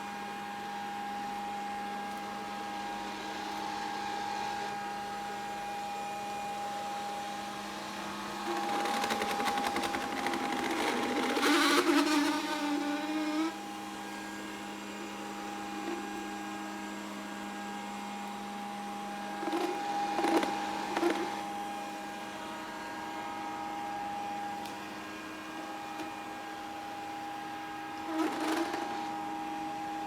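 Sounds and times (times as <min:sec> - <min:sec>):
robot vacuum motor hum: 0:00.8 - 0:18.4, 0:19.2 - 0:30.0
rapidly rattling whir: 0:07.3 - 0:14.3, 0:19.2 - 0:21.8, 0:26.8 - 0:29.9.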